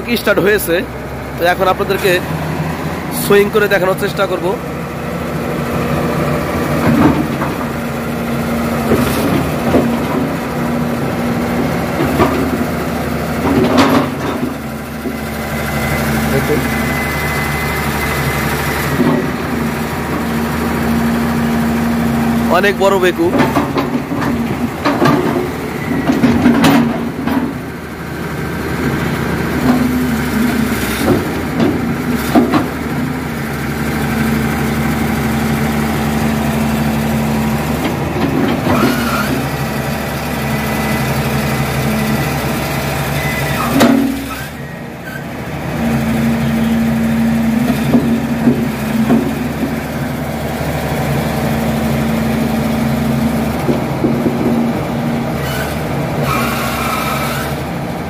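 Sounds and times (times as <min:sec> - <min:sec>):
excavator diesel engine running: 0:00.0 - 0:58.0
metal clanks and knocks: 0:06.8 - 0:07.8, 0:12.0 - 0:12.7, 0:13.4 - 0:15.2, 0:23.2 - 0:27.6, 0:31.0 - 0:32.8, 0:43.7 - 0:44.3, 0:47.6 - 0:49.8.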